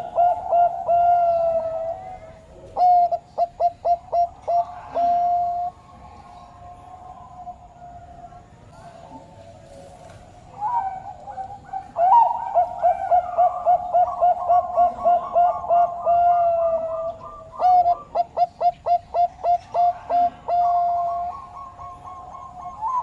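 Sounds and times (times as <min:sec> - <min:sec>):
turtledove cooing: 0:10.5 - 0:23.0.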